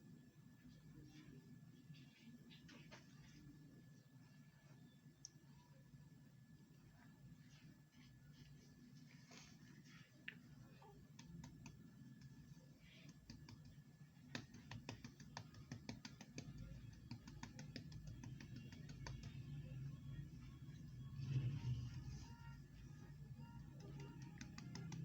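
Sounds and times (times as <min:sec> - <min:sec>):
low steady hum: 0:00.0 - 0:25.0
faint irregular clicks and taps: 0:10.2 - 0:19.4, 0:23.5 - 0:25.0.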